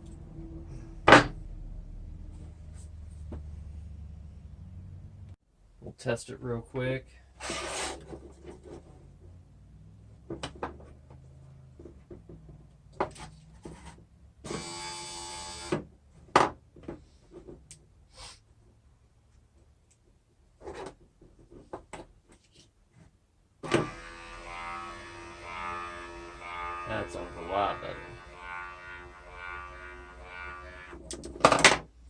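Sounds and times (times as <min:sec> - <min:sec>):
window motor buzzing: 0:14.5 - 0:15.7, 0:23.6 - 0:31.1.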